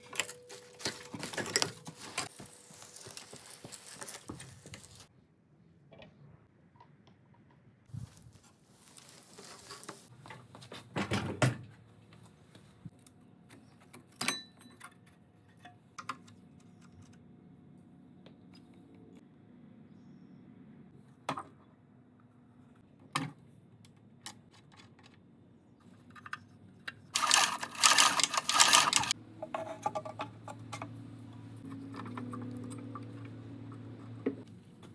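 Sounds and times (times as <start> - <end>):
metal tools clattering and rattling: 0.0 - 5.0, 27.2 - 30.7.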